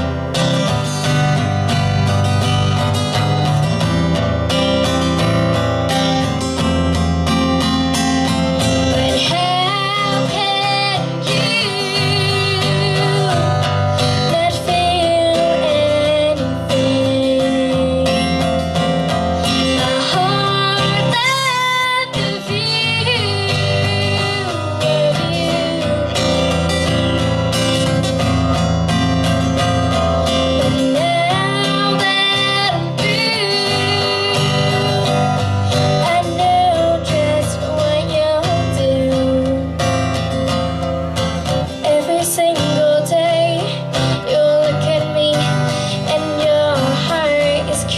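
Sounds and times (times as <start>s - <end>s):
acoustic guitar strumming: 0.0s - 47.9s
woman singing: 8.6s - 28.3s, 29.6s - 40.6s, 41.5s - 47.9s.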